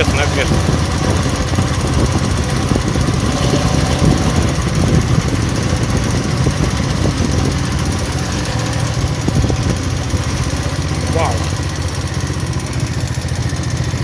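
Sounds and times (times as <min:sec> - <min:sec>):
petrol engine running: 0:00.0 - 0:14.0.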